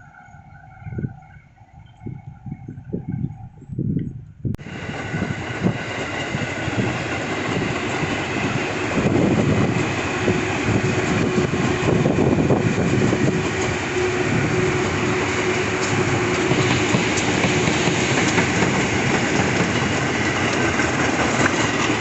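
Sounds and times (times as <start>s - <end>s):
train wheels clattering: 4.9s - 22.0s.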